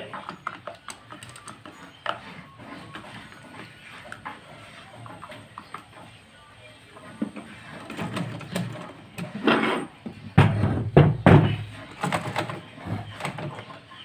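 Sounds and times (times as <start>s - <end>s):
metallic knocks and clunks: 10.3s - 12.3s.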